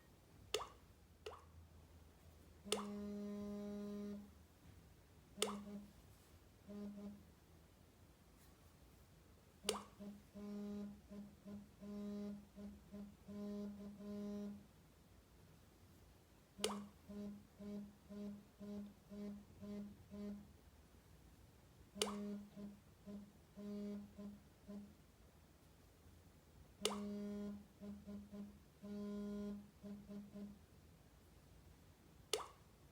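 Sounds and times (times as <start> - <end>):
phone vibration motor buzzing: 2.7 - 4.4, 6.6 - 7.3, 10.0 - 14.7, 17.0 - 20.5, 22.0 - 25.0, 26.8 - 30.6
sharp click: 5.4 - 5.7, 22.0 - 22.3, 26.8 - 27.1.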